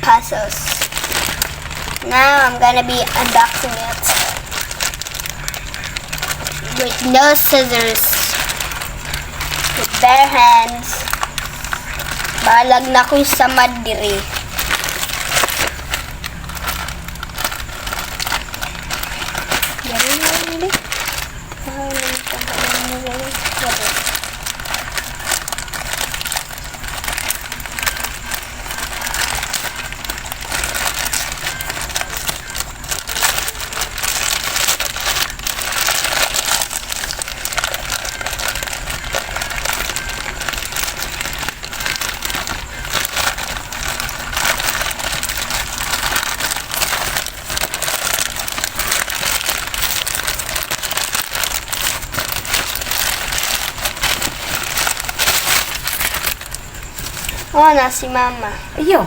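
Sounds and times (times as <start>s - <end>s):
packaging tearing and crinkling: 0.0s - 57.9s.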